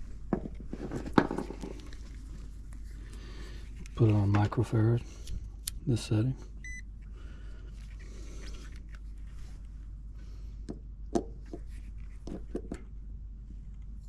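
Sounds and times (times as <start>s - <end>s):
steady low hum: 0.0s - 14.0s.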